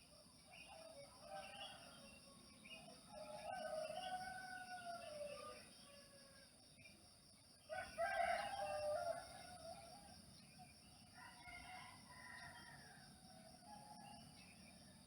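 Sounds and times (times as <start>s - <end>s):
rooster crowing: 3.1s - 5.5s, 7.7s - 9.6s.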